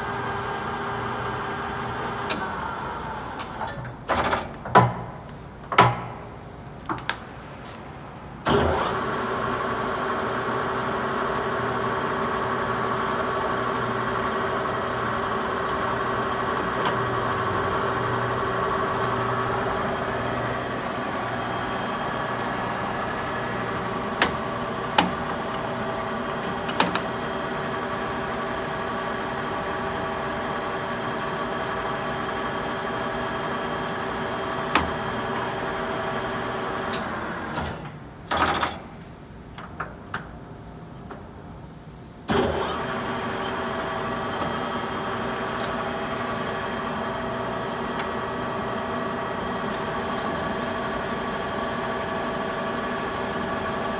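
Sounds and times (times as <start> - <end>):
lathe geared whine: 8.5 - 37.6, 42.3 - 53.9.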